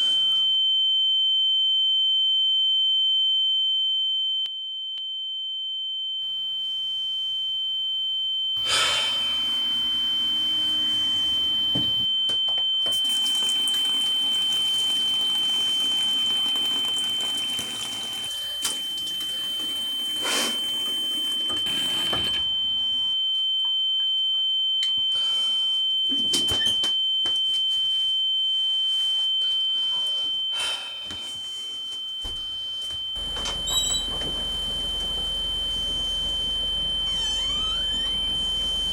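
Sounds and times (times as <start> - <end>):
high-pitched electronic tone: 32.8 - 38.9.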